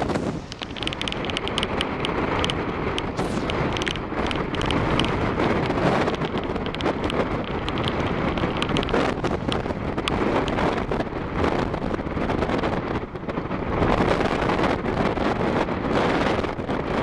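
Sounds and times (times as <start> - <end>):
short crackles: 0.0 - 10.9
wind buffeting microphone: 0.0 - 17.0.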